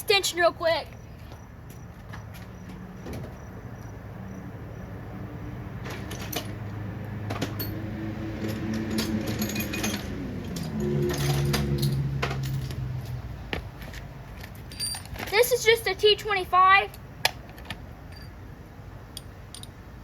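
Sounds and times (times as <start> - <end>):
metal hand tools clinking: 8.4 - 12.8, 19.2 - 19.8.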